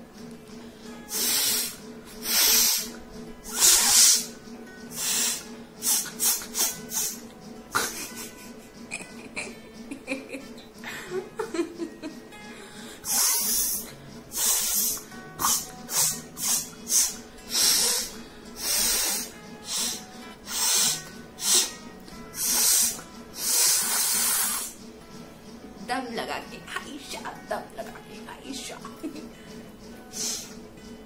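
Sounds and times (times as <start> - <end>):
woman blowing through nose: 1.0 - 7.2, 12.9 - 24.8, 30.1 - 30.6.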